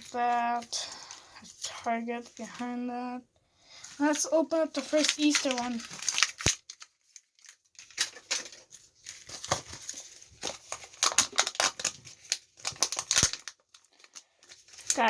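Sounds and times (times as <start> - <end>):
foil wrapper tearing and crinkling: 4.0 - 15.0.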